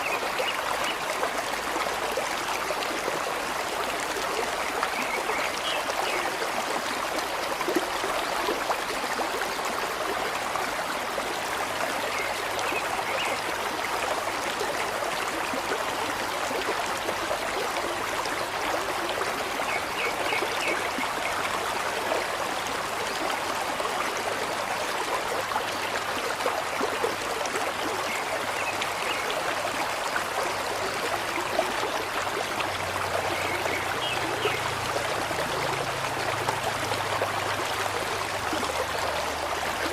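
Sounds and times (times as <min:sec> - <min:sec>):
flowing water: 0:00.0 - 0:39.9.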